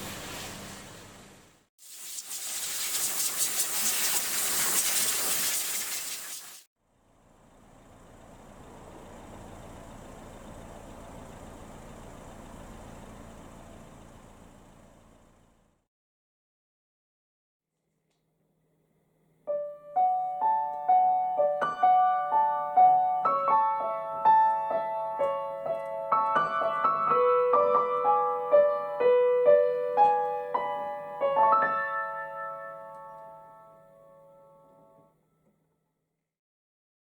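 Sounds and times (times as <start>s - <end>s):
gentle piano melody: 19.5s - 35.0s.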